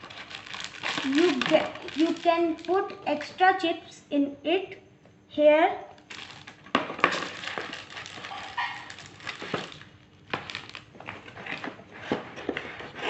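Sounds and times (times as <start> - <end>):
packaging rustling: 0.0 - 3.0, 6.0 - 13.0.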